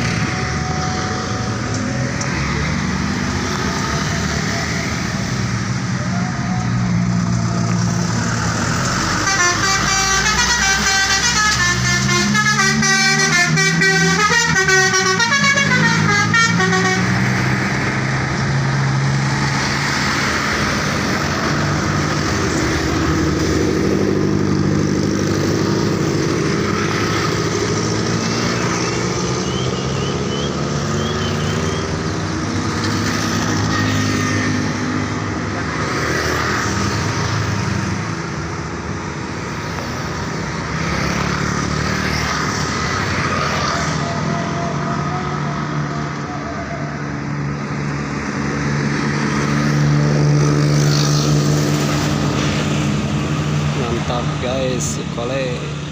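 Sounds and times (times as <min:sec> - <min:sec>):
bus horn playing a tune: 0:00.0 - 0:01.8, 0:06.0 - 0:07.0, 0:09.1 - 0:17.2
bus engine running: 0:00.0 - 0:33.6.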